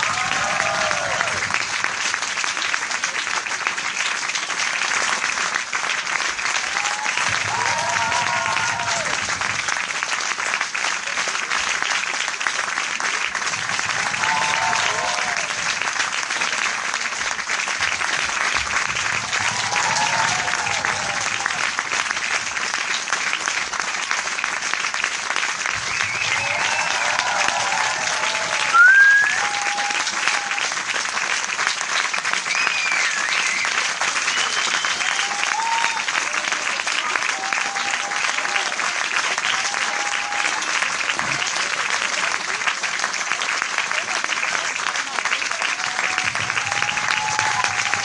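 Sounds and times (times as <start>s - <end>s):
crowd applauding: 0.0s - 48.0s.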